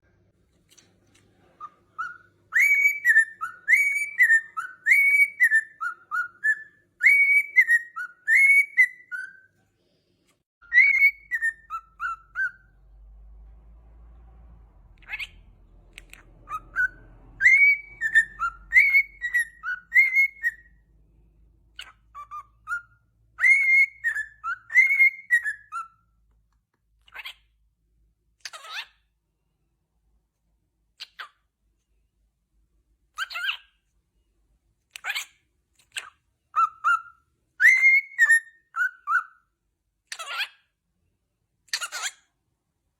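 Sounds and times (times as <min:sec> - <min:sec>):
cockatiel whistling a tune: 0:01.6 - 0:09.5, 0:10.6 - 0:12.8, 0:16.0 - 0:20.9, 0:21.7 - 0:26.2, 0:36.0 - 0:39.5
faint low rumble: 0:11.3 - 0:19.9.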